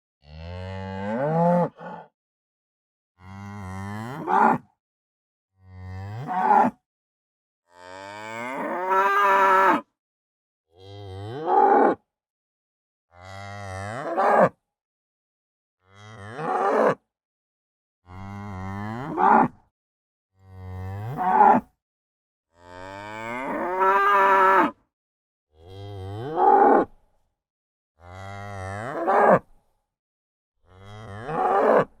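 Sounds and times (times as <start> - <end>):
cow mooing: 20.8 - 21.6, 22.6 - 24.8, 28.1 - 29.4, 30.7 - 31.9.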